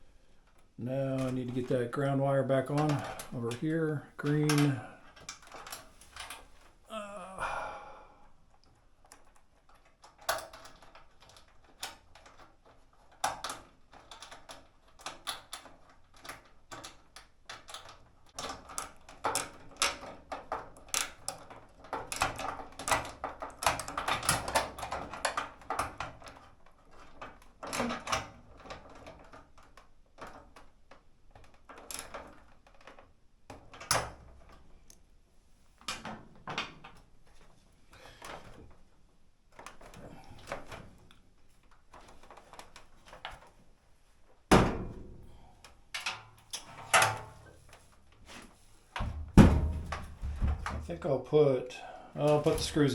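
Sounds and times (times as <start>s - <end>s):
plastic and metal parts clicking: 0.4s - 1.8s, 2.7s - 3.6s, 4.2s - 6.5s, 8.6s - 35.0s, 35.8s - 43.6s.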